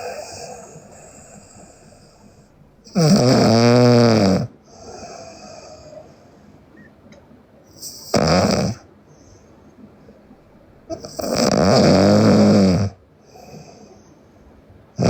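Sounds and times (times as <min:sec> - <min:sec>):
girl snoring loudly: 0:00.0 - 0:01.1, 0:02.9 - 0:04.5, 0:08.1 - 0:08.8, 0:10.9 - 0:13.0.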